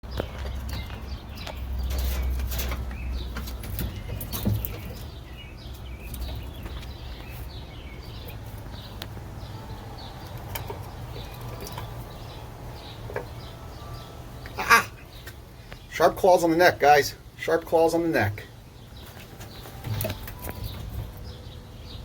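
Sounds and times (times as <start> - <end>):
squirrels scrabbling and chewing: 0.0 - 13.6, 18.8 - 21.5.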